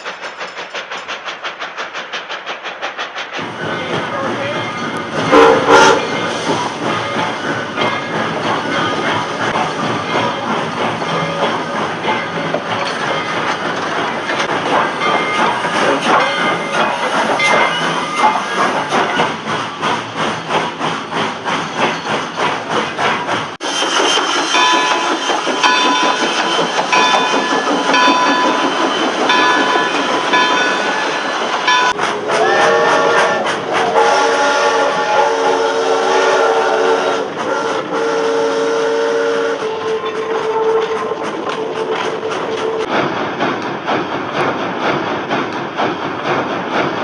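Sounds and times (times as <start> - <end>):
steam locomotive chuffing: 0.0 - 47.0
steam whistle blowing: 5.3 - 6.1, 32.3 - 41.0.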